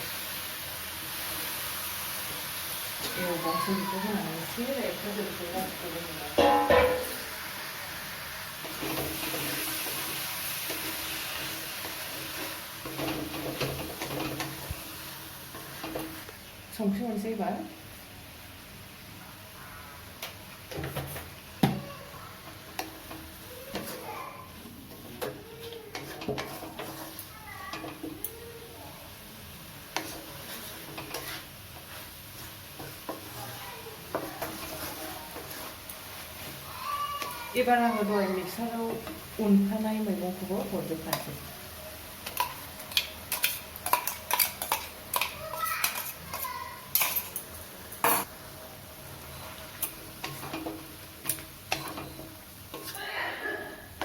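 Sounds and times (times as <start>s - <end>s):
chicken frying in a pan: 0.0s - 54.0s
scraping against a pan: 24.8s - 28.2s, 29.9s - 39.2s.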